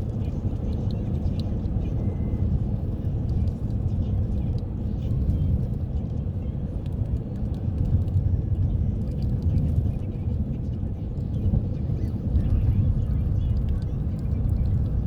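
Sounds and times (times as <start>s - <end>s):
car road and engine rumble: 0.0s - 15.0s
faint light ticks: 0.2s - 2.3s, 3.2s - 5.2s, 6.8s - 8.3s, 13.4s - 15.0s.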